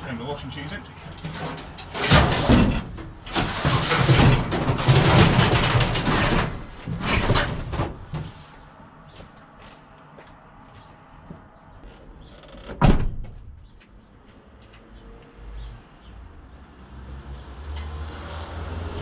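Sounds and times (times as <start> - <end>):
washing machine scraping and knocking: 1.0 - 8.5.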